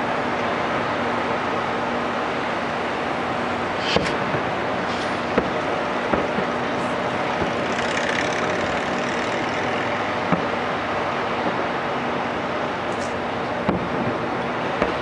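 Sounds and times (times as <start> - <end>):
noisy rumble: 0.0 - 15.0
distant fireworks popping: 3.7 - 15.0.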